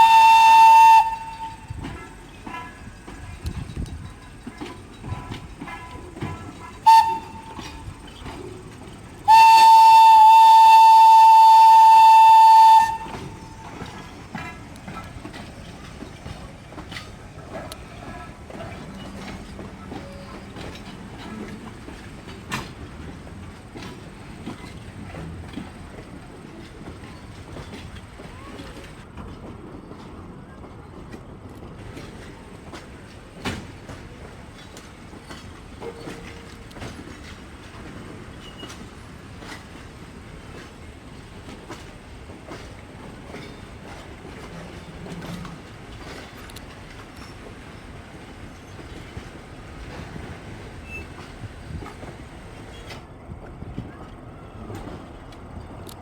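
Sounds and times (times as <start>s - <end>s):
locomotive whistle: 0.0s - 2.8s, 6.8s - 8.4s, 9.2s - 14.5s
rail clicks: 0.0s - 56.0s
train rolling on track: 0.0s - 56.0s.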